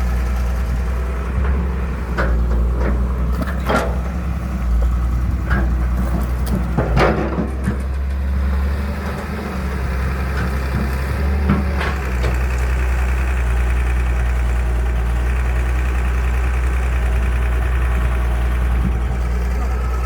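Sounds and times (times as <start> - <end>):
excavator diesel engine running: 0.0 - 20.0
metal clank: 1.4 - 8.1.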